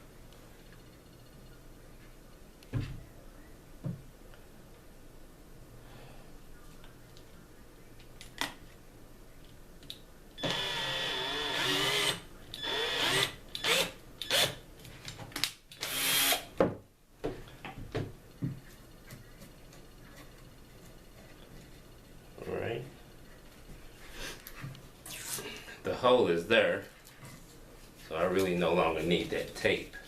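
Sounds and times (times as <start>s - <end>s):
power drill boring into wood: 10.4s - 14.6s, 15.8s - 16.5s.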